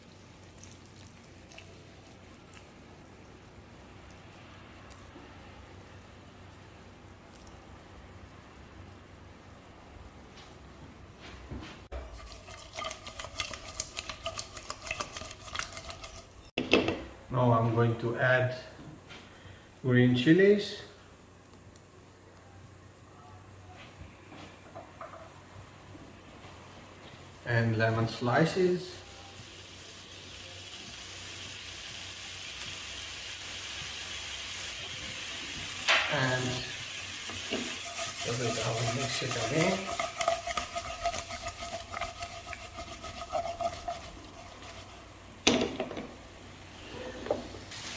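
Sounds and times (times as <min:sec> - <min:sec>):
spices sizzling in oil: 0:11.9 - 0:16.5, 0:27.9 - 0:45.5, 0:47.5 - 0:47.9
spoon stirring in metal pot: 0:11.9 - 0:16.5, 0:36.6 - 0:45.2.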